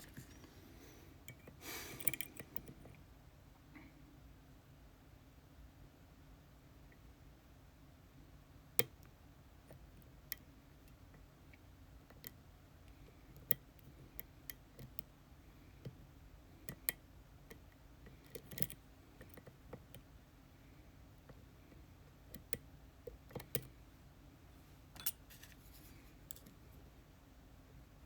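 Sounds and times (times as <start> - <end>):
lock picks clicking in a lock: 1.3 - 2.8, 18.2 - 20.0.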